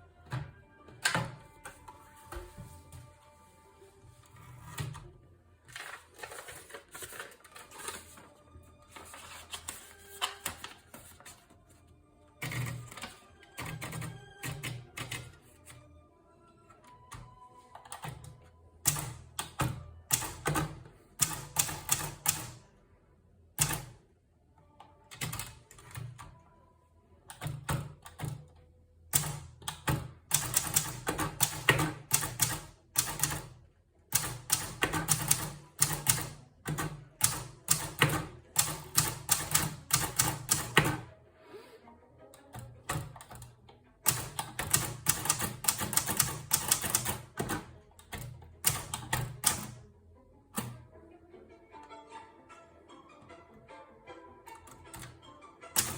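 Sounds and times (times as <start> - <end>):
typewriter key strikes: 18.9 - 22.6, 29.1 - 33.5, 34.1 - 41.0, 44.1 - 49.8.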